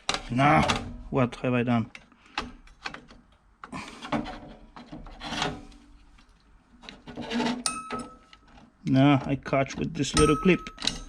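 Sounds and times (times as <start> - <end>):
computer part scraping in case: 6.8 - 8.7.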